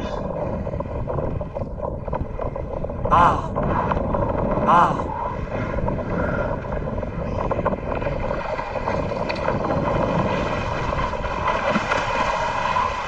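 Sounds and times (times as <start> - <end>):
boat engine running: 0.0 - 13.0.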